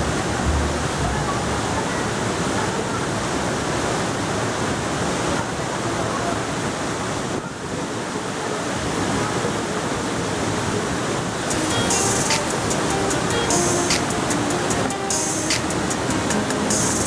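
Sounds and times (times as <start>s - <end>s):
waterfall roaring: 0.0s - 8.2s.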